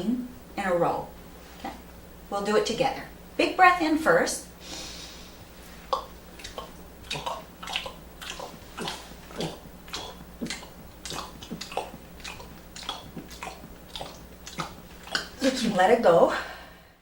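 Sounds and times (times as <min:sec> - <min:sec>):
soft wet gulping clicks: 0:05.9 - 0:15.9.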